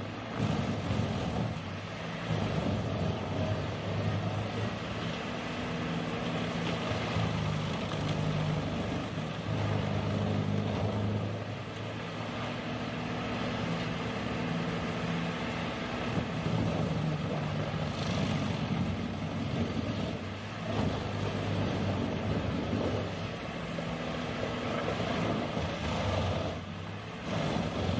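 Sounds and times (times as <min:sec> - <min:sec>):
machine engine rumbling: 0:00.0 - 0:27.9.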